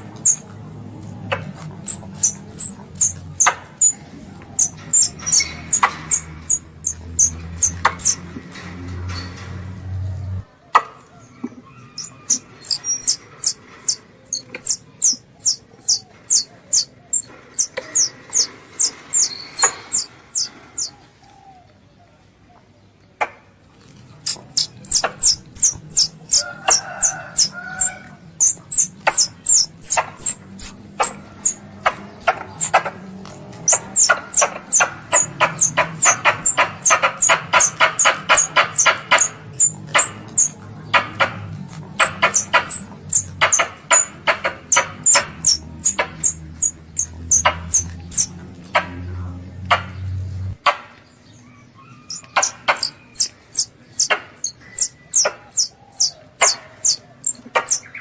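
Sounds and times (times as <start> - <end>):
low hum: 0.0 - 10.5, 24.1 - 50.6
squirrel call high chirps: 1.8 - 8.2, 11.8 - 20.9, 24.2 - 32.8, 33.6 - 41.3, 42.0 - 48.3, 51.8 - 58.0.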